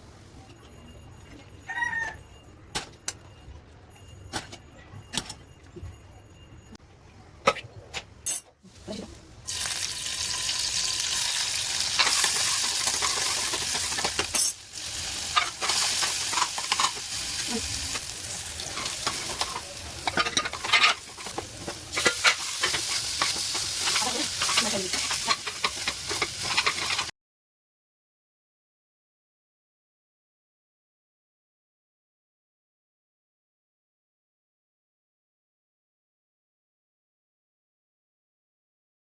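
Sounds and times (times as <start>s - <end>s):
noodles sizzling in a pan: 9.5s - 27.1s
spatula scraping a pan: 11.8s - 27.1s.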